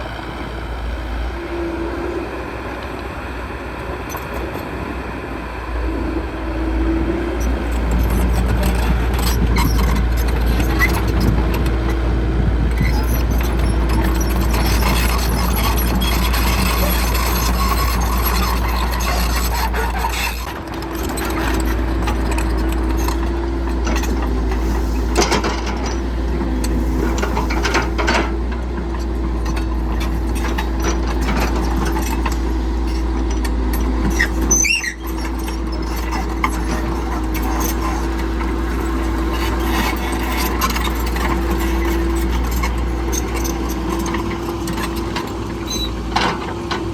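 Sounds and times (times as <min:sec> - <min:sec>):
steady whine: 0:00.0 - 0:10.4
low engine drone: 0:00.0 - 0:46.9
high squealing: 0:34.1 - 0:36.5.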